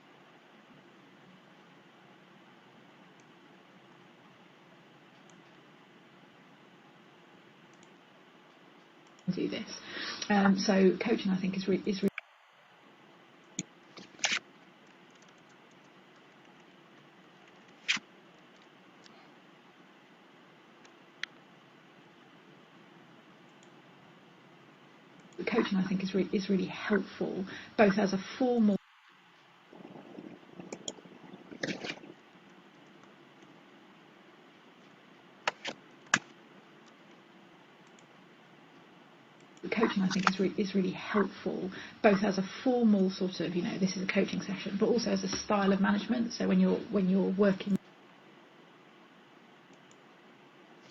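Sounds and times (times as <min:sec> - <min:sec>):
faint steady hiss: 0:00.0 - 0:50.9
faint steady hum: 0:00.0 - 0:50.9
computer keyboard clicks: 0:14.8 - 0:16.7.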